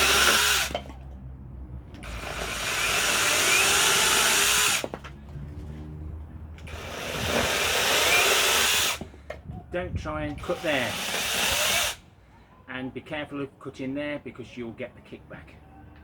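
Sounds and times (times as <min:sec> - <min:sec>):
electric chainsaw running: 0:00.0 - 0:00.9, 0:02.0 - 0:05.0, 0:06.6 - 0:09.0, 0:10.4 - 0:12.0.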